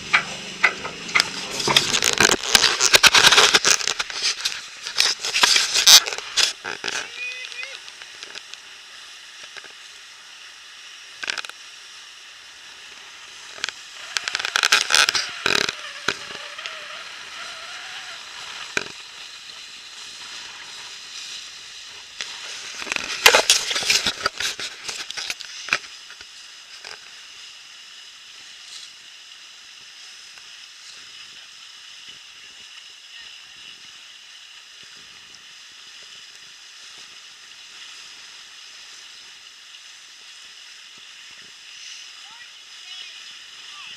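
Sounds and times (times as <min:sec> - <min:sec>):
water rushing past a boat: 0:00.0 - 0:09.8, 0:12.4 - 0:26.2.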